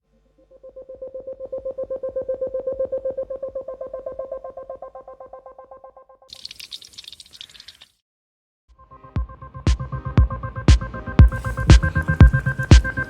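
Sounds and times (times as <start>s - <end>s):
crackling hiss: 6.3s - 7.9s, 11.3s - 13.0s.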